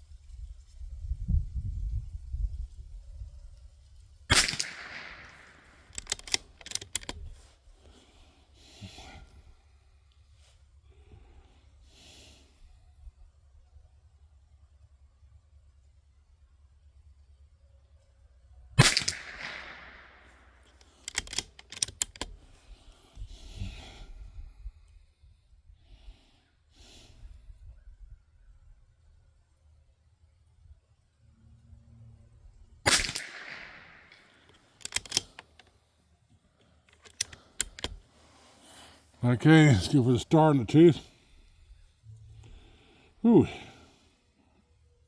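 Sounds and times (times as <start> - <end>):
rifle shot: 4.3 - 7.2, 18.8 - 22.3, 32.9 - 35.4
metallic clicks of rifle bolt: 4.3 - 7.6, 18.8 - 23.0, 32.9 - 35.8, 36.4 - 38.1.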